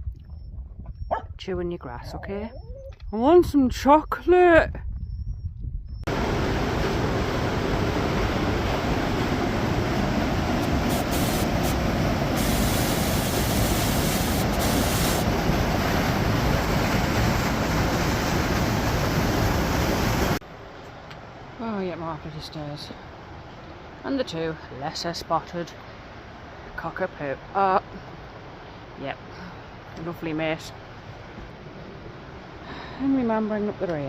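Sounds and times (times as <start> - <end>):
waterfall rushing: 6.1 - 20.4.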